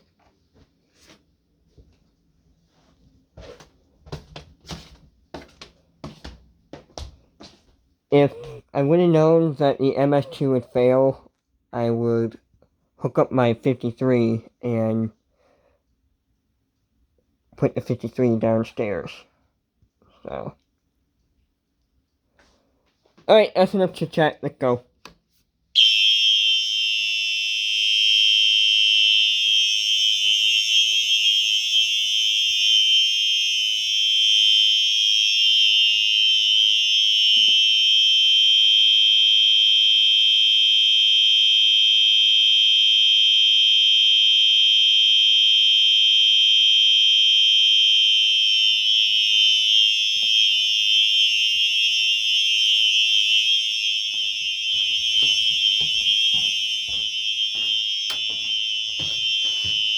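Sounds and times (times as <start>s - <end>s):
fire alarm horns blaring: 25.8s - 59.9s.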